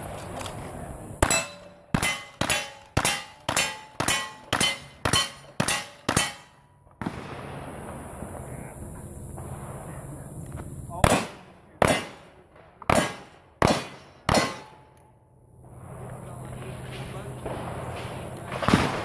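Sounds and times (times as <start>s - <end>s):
steel target ringing: 1.2s - 6.7s
gunshots: 1.2s - 8.8s, 10.9s - 14.9s, 15.6s - 19.0s.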